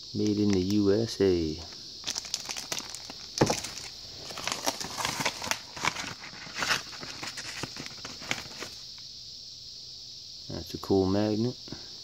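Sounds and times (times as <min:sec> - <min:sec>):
crickets chirring: 0:00.0 - 0:12.0
packaging rustling and crinkling: 0:00.2 - 0:00.8, 0:02.0 - 0:08.8.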